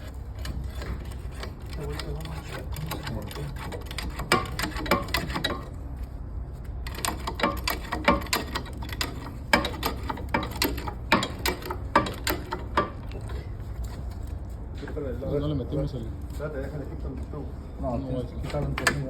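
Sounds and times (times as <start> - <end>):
jack pumping metallic clicks: 0.0 - 5.7, 6.8 - 14.0, 18.5 - 19.0.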